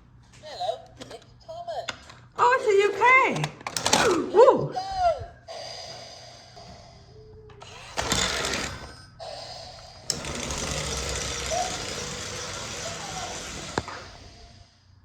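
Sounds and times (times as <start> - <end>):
toy train motor whirring: 7.6 - 14.8.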